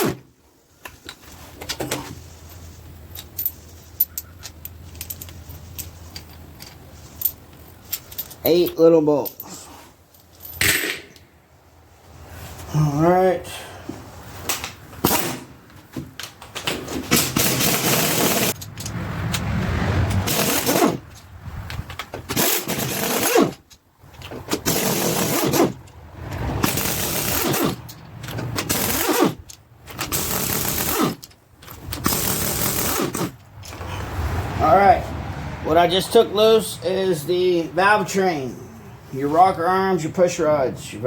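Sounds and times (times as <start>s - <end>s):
impact wrench bursts: 17.1s - 18.6s, 20.2s - 21.0s, 22.3s - 23.6s, 24.5s - 25.8s, 26.6s - 27.8s, 28.4s - 29.4s, 30.0s - 31.2s, 31.9s - 33.4s.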